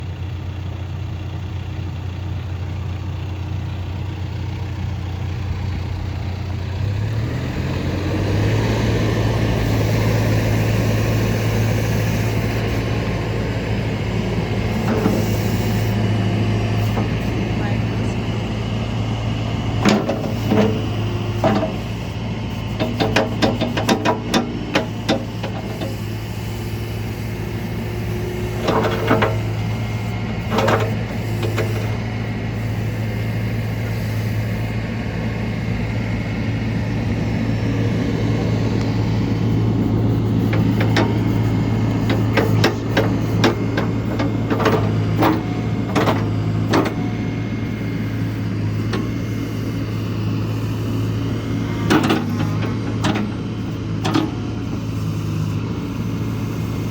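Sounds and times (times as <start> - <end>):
diesel engine running: 0.0 - 56.9
metallic clanks and knocks: 19.8 - 21.8, 22.8 - 26.0, 28.6 - 29.6, 42.0 - 47.0, 51.9 - 53.4.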